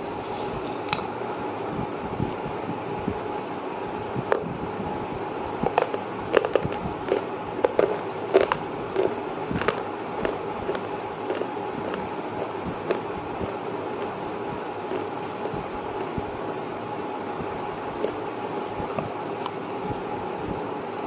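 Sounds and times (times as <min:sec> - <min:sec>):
chewing crunchy food: 0:05.6 - 0:16.4, 0:17.9 - 0:19.9.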